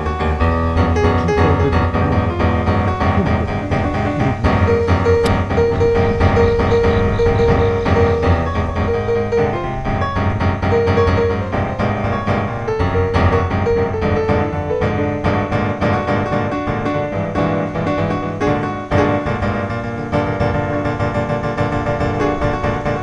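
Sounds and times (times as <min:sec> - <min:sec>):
piano background music: 0:00.0 - 0:23.0.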